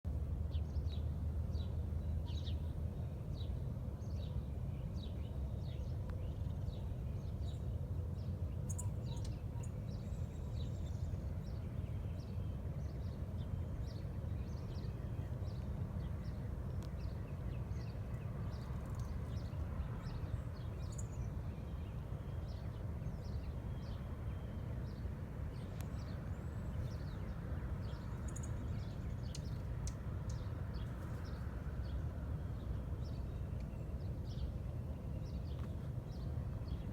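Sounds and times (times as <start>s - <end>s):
low outdoor rumble: 0.1s - 36.9s
small birds chirping: 0.5s - 36.9s.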